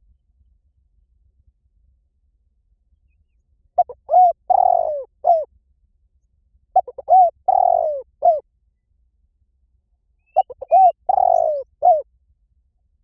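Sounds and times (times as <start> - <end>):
dove cooing: 3.8 - 5.5, 6.8 - 8.4, 10.4 - 12.0.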